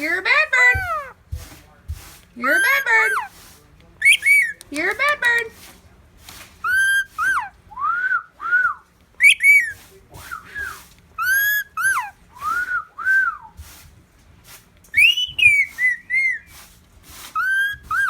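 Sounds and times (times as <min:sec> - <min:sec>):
bird whistling short notes: 0:09.2 - 0:09.7, 0:15.0 - 0:16.5.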